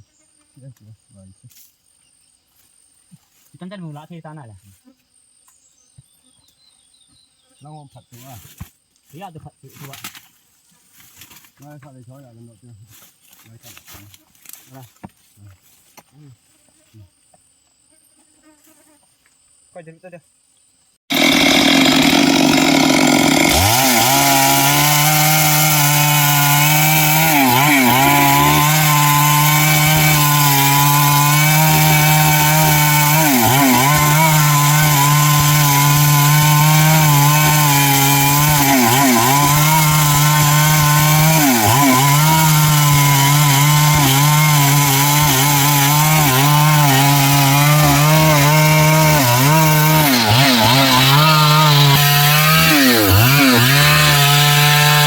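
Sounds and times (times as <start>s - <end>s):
chainsaw cutting timber: 21.1s - 55.0s.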